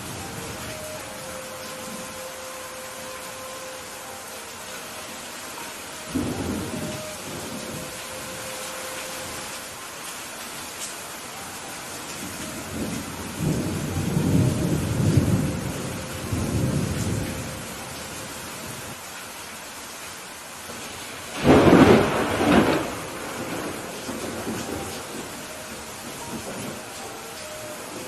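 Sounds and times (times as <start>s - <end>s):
steady rain: 0.0s - 28.0s
rolling thunder rumble: 6.1s - 9.6s, 12.2s - 18.0s, 21.3s - 27.0s
sharp thunderclap: 21.4s - 24.8s.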